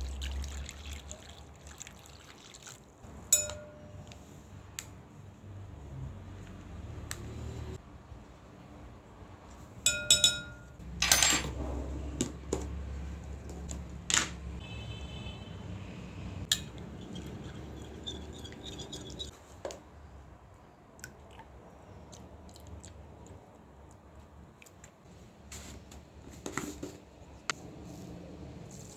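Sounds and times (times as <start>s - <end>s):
dishes and utensils clinking: 3.3s - 4.1s, 9.9s - 12.4s, 16.5s - 19.3s.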